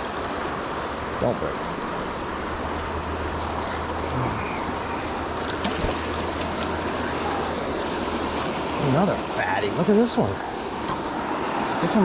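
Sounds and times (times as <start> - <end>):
creek water rushing: 0.0 - 12.0.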